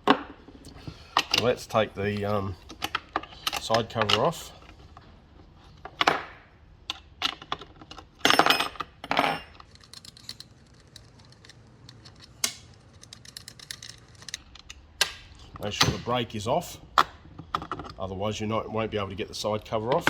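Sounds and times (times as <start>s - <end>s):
hand tools clicking and clattering: 7.0s - 16.1s.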